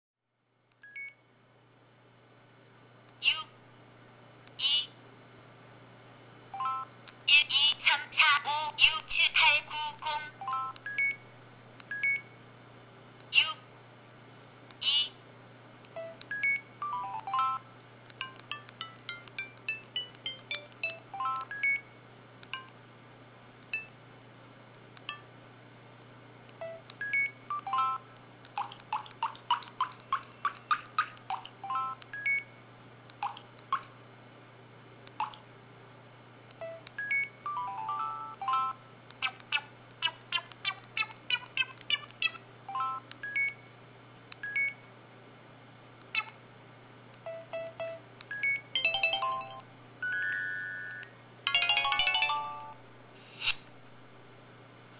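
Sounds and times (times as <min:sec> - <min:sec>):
steady low hum: 0:00.3 - 0:50.0
phone electronic beeps and chimes: 0:16.0 - 0:17.6, 0:18.2 - 0:21.9, 0:36.6 - 0:38.8, 0:47.3 - 0:52.8.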